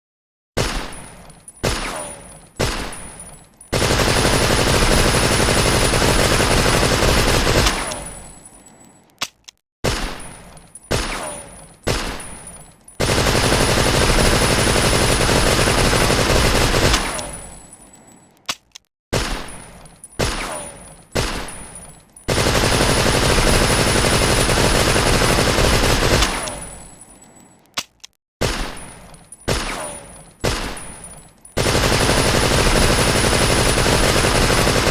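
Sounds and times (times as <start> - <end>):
submachine gun automatic fire: 3.7 - 8.2, 13.0 - 17.5, 22.3 - 26.8, 31.6 - 34.9.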